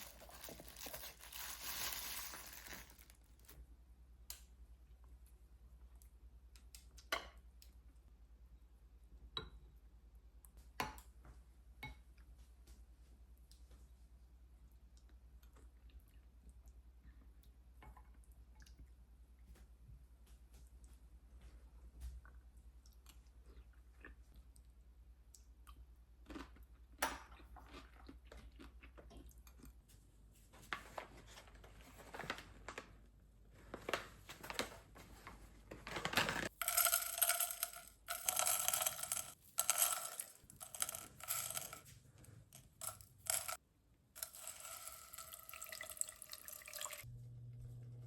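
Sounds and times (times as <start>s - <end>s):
tap water running: 44.2s - 47.0s.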